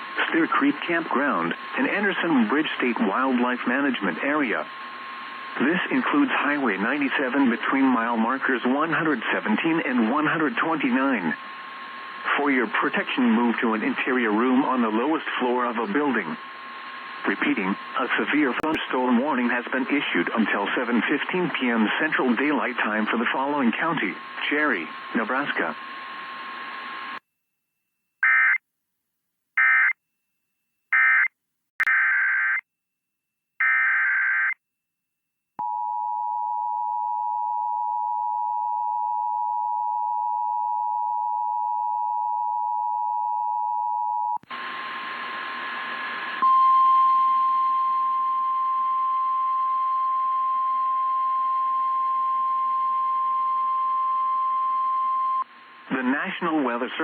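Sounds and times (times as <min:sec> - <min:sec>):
radio static: 0:00.0 - 0:27.2, 0:55.6 - 0:57.0
steady warning alarm tone: 0:28.2 - 0:28.6, 0:29.6 - 0:30.0, 0:30.9 - 0:32.6, 0:33.6 - 0:34.6.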